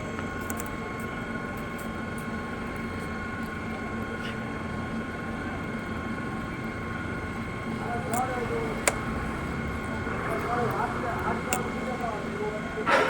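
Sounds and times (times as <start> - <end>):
pipe-threading machine running: 4.8 - 13.0.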